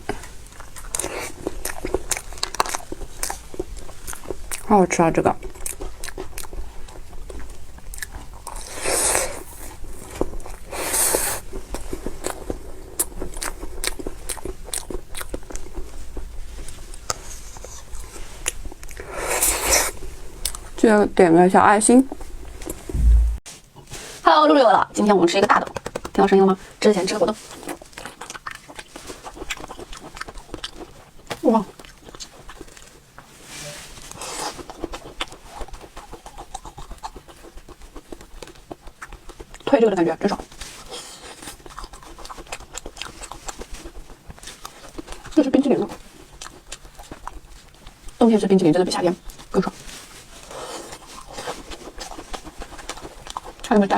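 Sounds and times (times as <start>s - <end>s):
wet mouth clicks from chewing: 0.1s - 4.7s, 5.4s - 8.7s, 11.7s - 16.0s, 27.6s - 32.9s, 40.6s - 48.2s, 50.9s - 53.8s.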